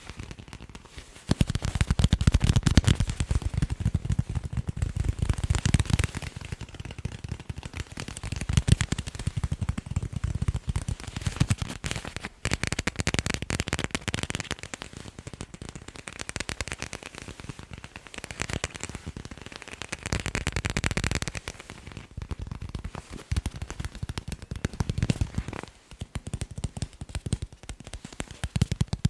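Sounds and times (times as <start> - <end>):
tapping on sports balls: 0.0 - 29.0.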